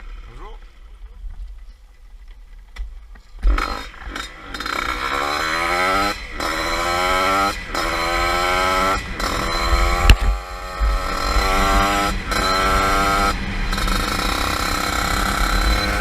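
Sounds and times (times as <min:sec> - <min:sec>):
motorbike engine revving hard: 0:03.5 - 0:16.0.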